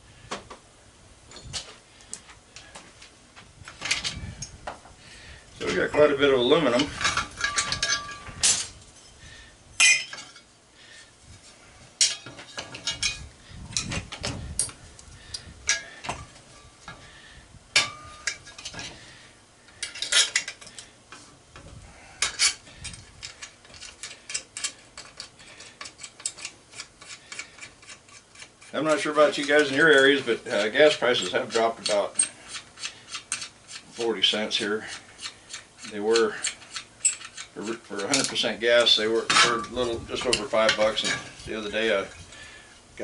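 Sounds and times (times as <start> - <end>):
metal scrap clinking: 6.5 - 9.2, 9.8 - 10.5, 12.0 - 14.8, 15.7 - 21.2, 22.2 - 42.6.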